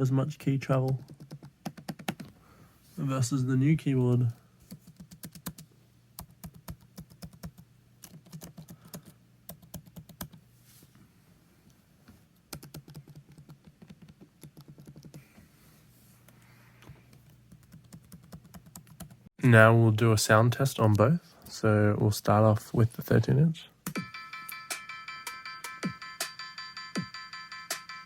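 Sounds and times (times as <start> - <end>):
laptop keys clicking: 0.9 - 2.3, 4.6 - 5.6, 6.2 - 10.4, 12.5 - 15.2.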